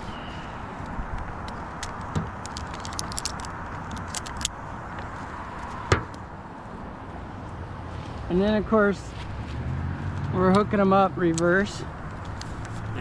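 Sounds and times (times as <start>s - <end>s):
steady background noise: 0.0s - 13.0s
carabiners clinking: 1.8s - 4.5s.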